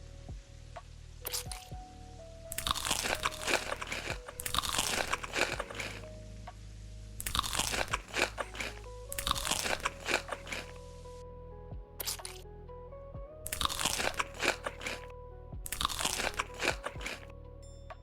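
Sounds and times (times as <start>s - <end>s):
crunching crisp food: 1.2s - 1.6s, 2.5s - 6.0s, 7.2s - 10.8s, 13.5s - 15.1s, 15.7s - 17.2s.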